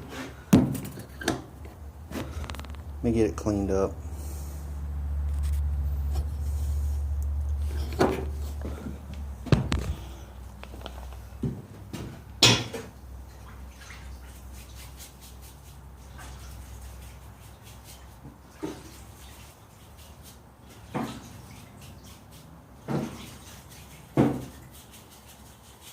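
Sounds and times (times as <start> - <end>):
low hum: 3.9 - 10.5.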